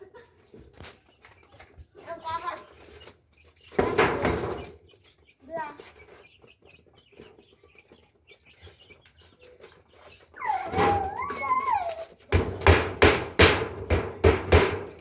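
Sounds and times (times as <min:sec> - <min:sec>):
loud sharp knocks: 0:03.8 - 0:04.7, 0:12.3 - 0:15.0
animal call rising and falling: 0:10.4 - 0:12.1.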